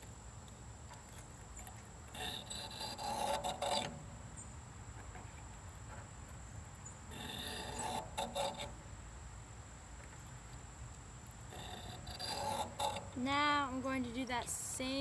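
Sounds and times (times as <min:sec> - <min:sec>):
faint rubbing: 0:01.6 - 0:04.1, 0:07.1 - 0:08.8, 0:11.5 - 0:15.0
knife scraping on sharpening stone: 0:11.6 - 0:13.1.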